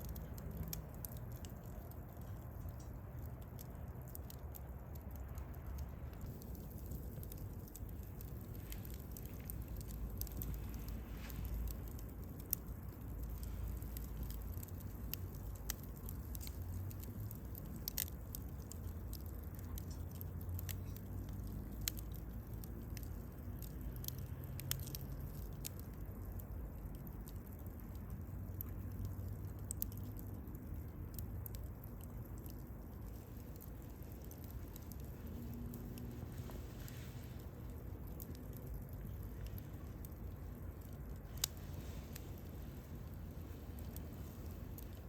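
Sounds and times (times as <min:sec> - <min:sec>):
sharp pops of fire: 0:00.0 - 0:27.9
campfire crackling: 0:00.0 - 0:45.0.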